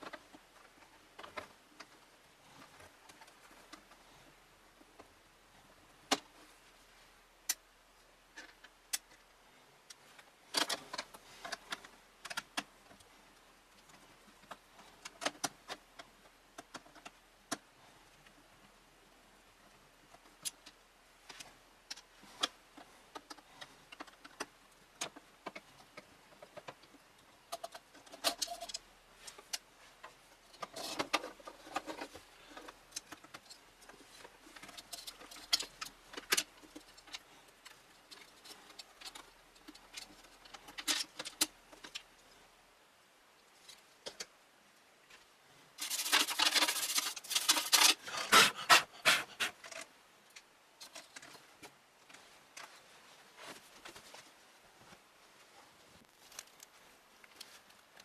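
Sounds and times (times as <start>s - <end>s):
small hardware clicking and rattling: 45.8s - 48.2s
jangling clatter of small parts: 45.8s - 48.6s.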